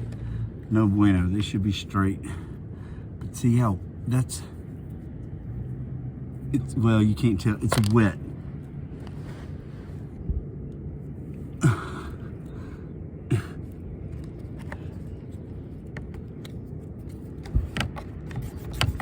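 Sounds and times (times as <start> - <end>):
low background rumble: 0.0 - 19.0
vent cap parts clicking and knocking: 7.5 - 8.2, 14.0 - 19.0.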